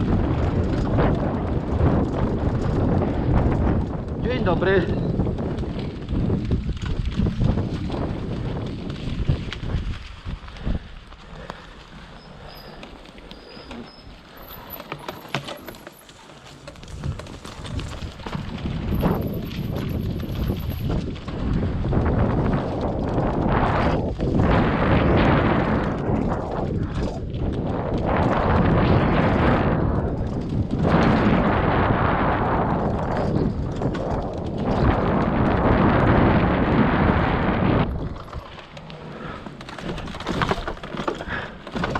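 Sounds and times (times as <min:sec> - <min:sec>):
wind buffeting microphone: 0:00.0 - 0:15.8, 0:16.6 - 0:41.9
bike knocking and rattling: 0:00.0 - 0:41.9
tyres rumbling over rough ground: 0:00.0 - 0:41.9.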